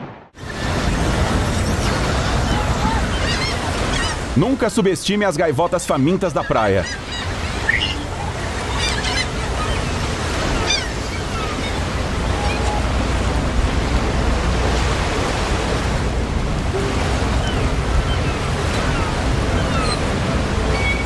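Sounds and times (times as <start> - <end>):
surf rushing: 0.0 - 6.3, 6.9 - 21.0
seagull calls: 1.6 - 4.3, 6.3 - 13.1, 16.7 - 21.0.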